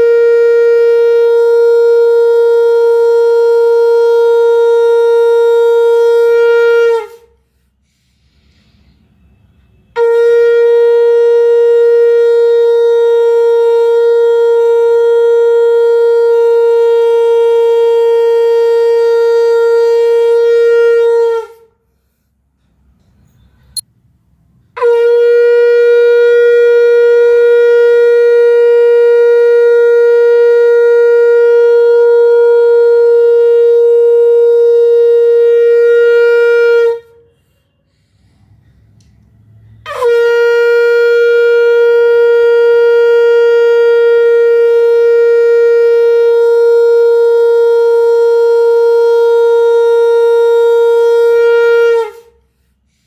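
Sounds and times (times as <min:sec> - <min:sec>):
conch shell blasts: 0:09.2 - 0:21.7, 0:24.8 - 0:37.4, 0:39.4 - 0:52.4.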